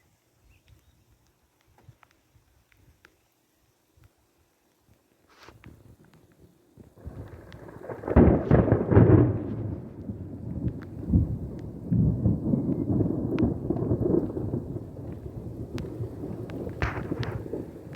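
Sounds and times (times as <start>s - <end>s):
thunder rumbling: 6.8s - 17.9s
thunder clap: 7.0s - 17.9s.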